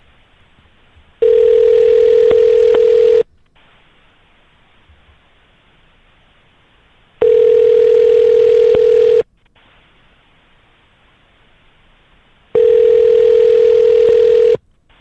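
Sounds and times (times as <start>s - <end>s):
faint line hiss: 0.0s - 15.0s
telephone ringback tone: 1.2s - 3.2s, 7.2s - 9.2s, 12.6s - 14.6s.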